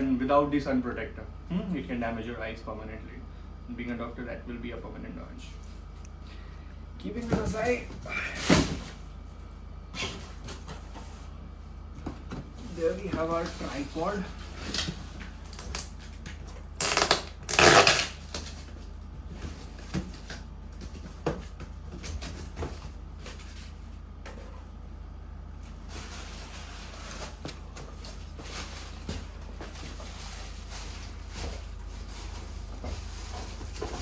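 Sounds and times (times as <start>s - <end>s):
cardboard scraping rustles: 25.6s - 34.0s.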